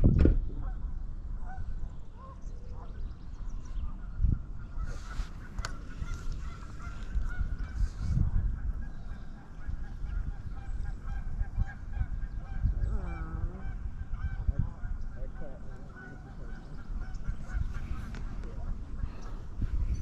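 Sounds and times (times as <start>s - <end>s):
geese honking: 4.0s - 19.8s.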